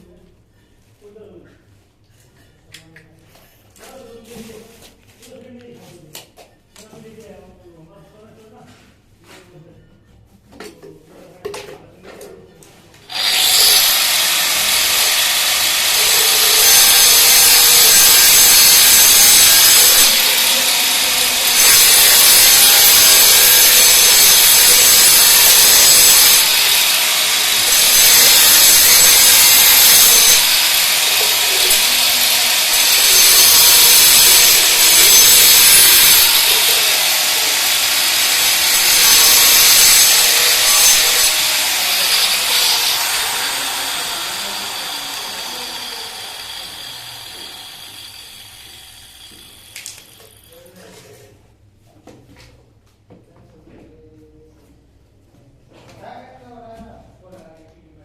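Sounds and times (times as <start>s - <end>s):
power tool whining: 13.1s - 50.4s.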